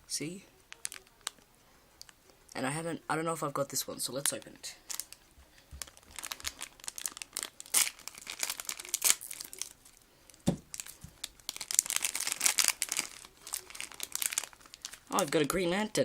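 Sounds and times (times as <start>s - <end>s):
plastic packet crinkling: 0.3s - 1.4s, 3.8s - 16.0s.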